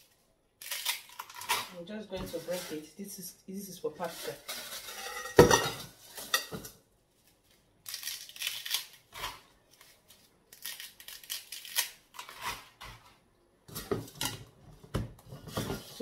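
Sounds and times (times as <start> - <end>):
dry pasta snapping: 0.6 - 1.7, 7.8 - 12.4.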